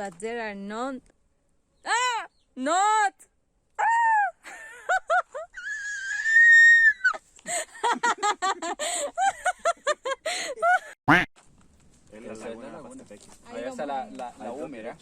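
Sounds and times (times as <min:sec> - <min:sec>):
person squealing: 0:11.1 - 0:11.3.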